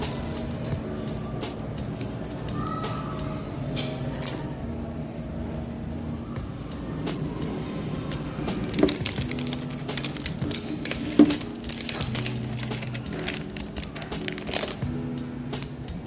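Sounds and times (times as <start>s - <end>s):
background music: 0.0s - 16.0s
toy packaging crinkling and clicking: 8.0s - 14.9s.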